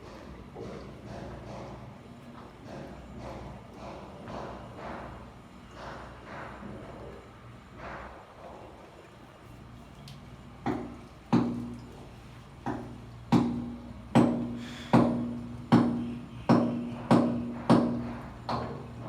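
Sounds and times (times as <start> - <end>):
sharp ringing knocks: 12.7 - 18.8.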